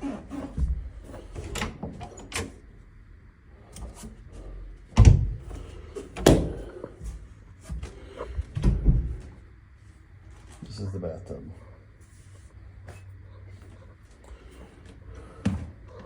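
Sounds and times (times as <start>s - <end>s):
knocks and thumps: 8.4s - 9.3s.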